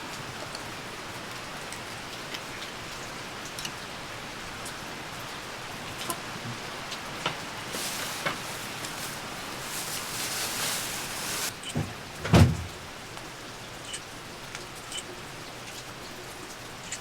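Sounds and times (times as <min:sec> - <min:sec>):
steady rain falling: 0:00.0 - 0:13.6
loud hiss: 0:07.7 - 0:11.6.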